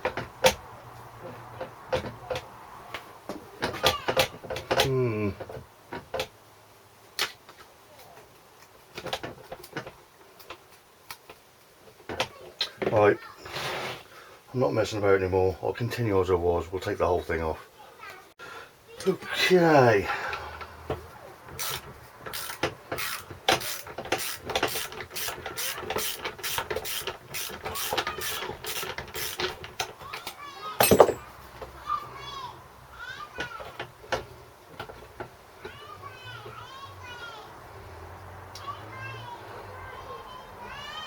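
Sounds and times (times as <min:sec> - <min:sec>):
ratchet wrench clicking: 0:21.6 - 0:29.5
metallic clicks of tools and parts: 0:30.8 - 0:31.3.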